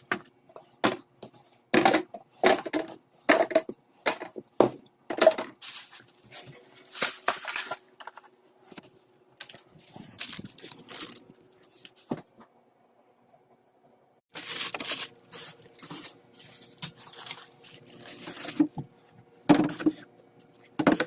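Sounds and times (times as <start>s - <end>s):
plastic packaging crinkling: 5.6s - 8.3s, 9.4s - 12.0s, 14.3s - 18.8s.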